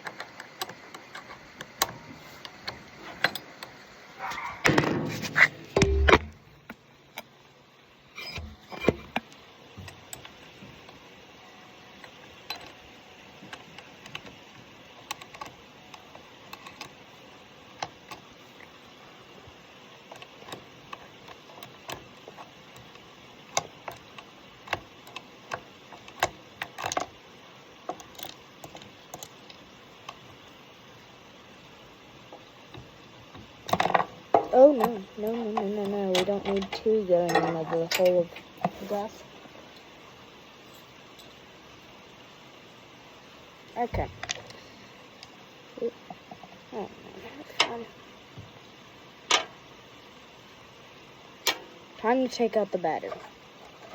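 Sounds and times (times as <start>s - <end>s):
metal knocks: 4.6s - 6.4s
metal tools clicking and clinking: 33.7s - 38.4s.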